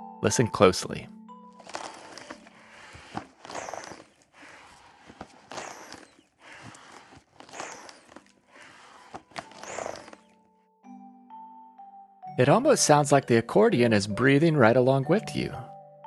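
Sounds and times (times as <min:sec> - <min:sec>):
accordion bellows air rushing: 0:01.6 - 0:10.3
small clicks: 0:01.6 - 0:10.4.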